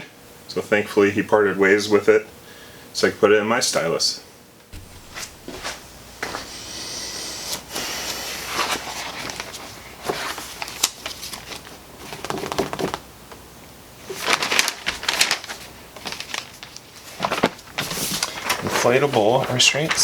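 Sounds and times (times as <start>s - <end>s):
handling rustling: 4.8s - 6.5s.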